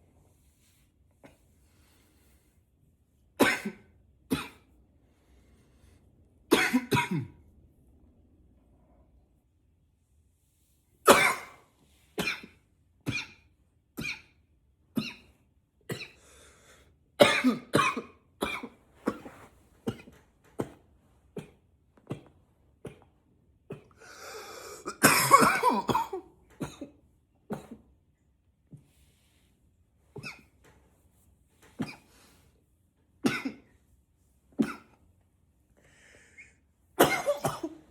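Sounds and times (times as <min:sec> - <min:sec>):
man coughing: 0:06.5 - 0:07.4, 0:11.1 - 0:11.6, 0:17.2 - 0:20.8, 0:24.6 - 0:26.9, 0:37.0 - 0:37.9.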